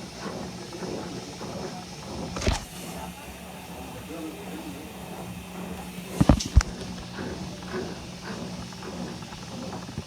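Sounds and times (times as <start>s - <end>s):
washing machine humming: 0.0s - 10.0s.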